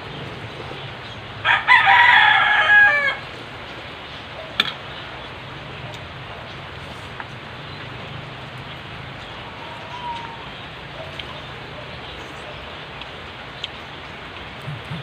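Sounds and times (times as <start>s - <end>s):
rooster crowing: 1.4s - 3.3s.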